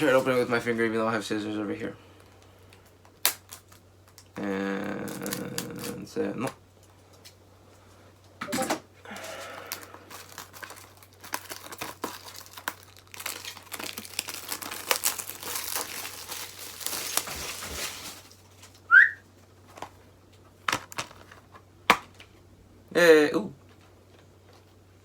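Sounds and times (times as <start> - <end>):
plastic wrapping crinkling and tearing: 2.2 - 6.6, 9.1 - 18.9.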